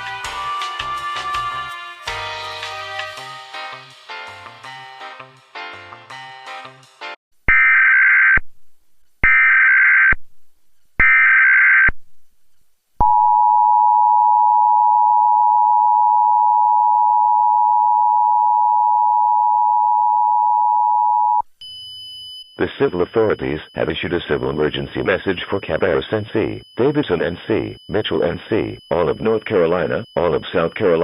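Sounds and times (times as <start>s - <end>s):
data header tones: 13.0s - 31.0s
two-tone attention signal: 13.0s - 31.0s.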